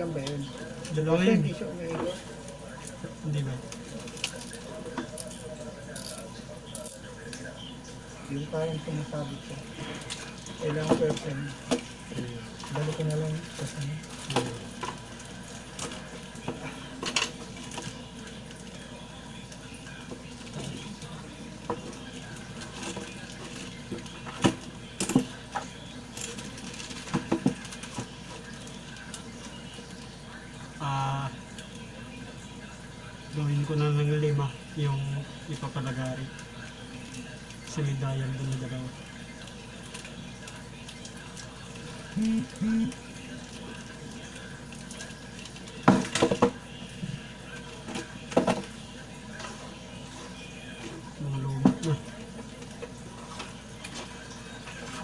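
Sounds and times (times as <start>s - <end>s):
person humming: 42.2s - 42.9s.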